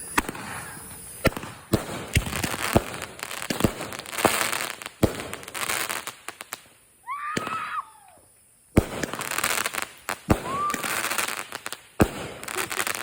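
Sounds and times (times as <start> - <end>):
fireworks bangs with crackling: 0.0 - 8.1, 8.7 - 13.0.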